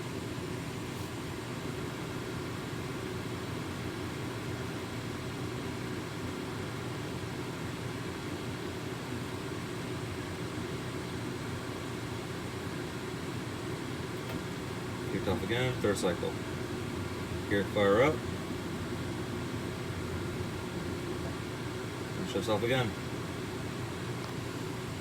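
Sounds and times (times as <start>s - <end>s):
furnace blower fan whirring: 0.0s - 25.0s.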